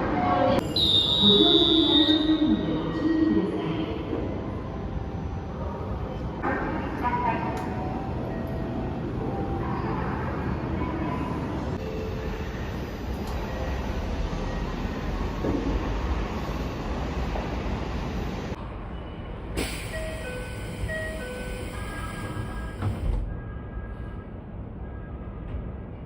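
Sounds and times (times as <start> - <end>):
train wheels rumbling on rails: 19.5 - 23.3.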